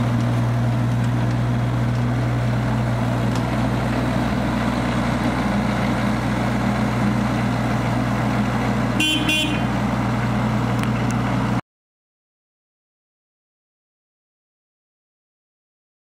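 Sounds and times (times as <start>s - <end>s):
excavator diesel engine running: 0.0s - 11.6s
short horn toots: 9.0s - 9.8s.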